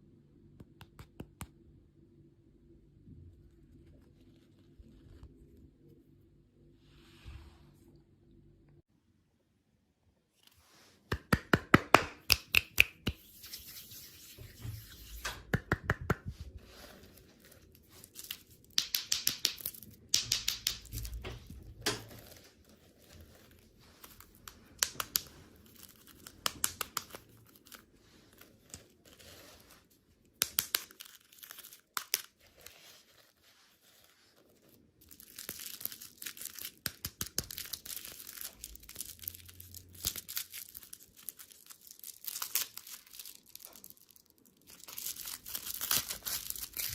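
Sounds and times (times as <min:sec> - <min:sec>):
candy wrapper crinkling: 0:16.4 - 0:46.9.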